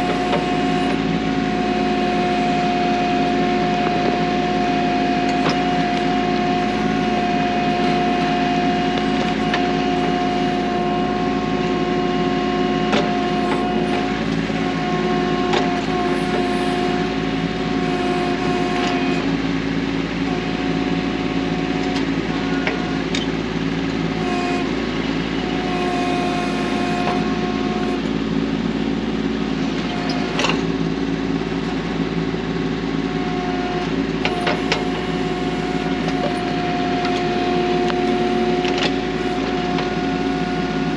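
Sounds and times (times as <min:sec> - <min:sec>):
high whine: 0:00.0 - 0:40.9
tractor diesel engine running: 0:00.0 - 0:40.9.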